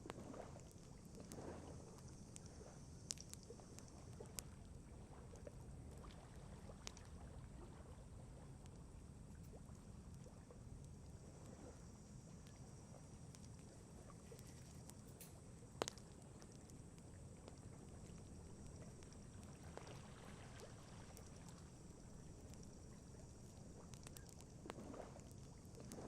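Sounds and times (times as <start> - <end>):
low background rumble: 0.0 - 26.0
campfire crackling: 13.2 - 26.0.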